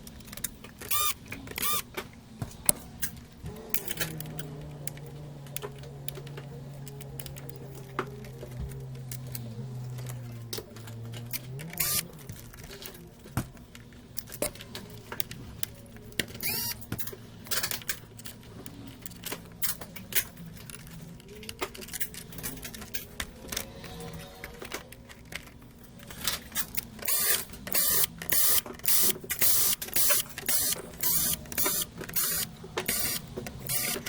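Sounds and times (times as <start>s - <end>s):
tools clicking on circuit board: 0.1s - 2.0s, 2.7s - 13.6s, 14.2s - 23.6s, 24.6s - 34.0s.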